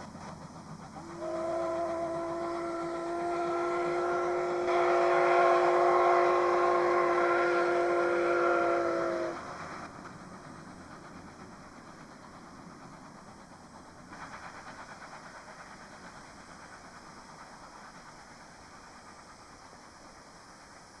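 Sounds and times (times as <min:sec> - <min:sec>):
steam train running noise: 0:00.0 - 0:21.0
steam locomotive whistle: 0:00.8 - 0:09.9.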